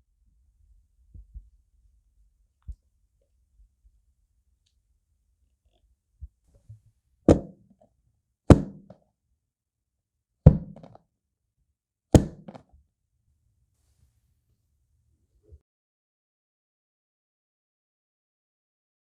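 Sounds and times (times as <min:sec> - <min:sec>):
hard knocks on kitchen surface: 0:07.3 - 0:07.6, 0:08.5 - 0:09.0, 0:10.5 - 0:11.0, 0:12.2 - 0:12.6.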